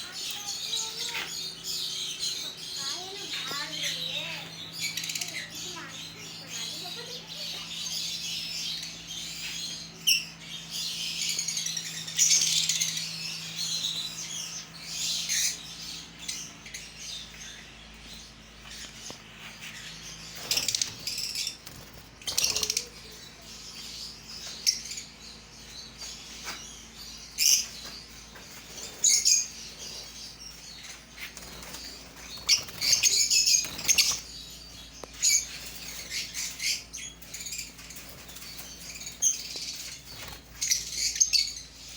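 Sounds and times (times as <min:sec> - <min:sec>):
parrots chirping and chattering: 0:00.0 - 0:41.9
wings fluttering: 0:18.6 - 0:23.5, 0:27.4 - 0:34.4, 0:35.1 - 0:41.4.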